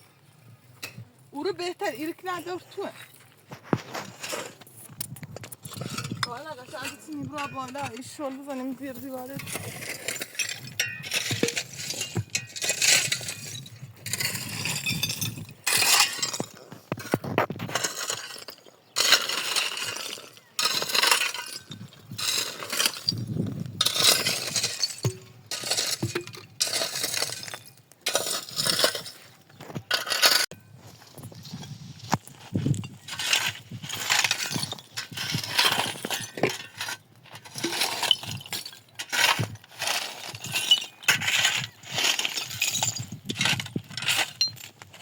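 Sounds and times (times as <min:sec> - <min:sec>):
clinking and rattling: 0:05.1 - 0:30.6, 0:32.8 - 0:45.0.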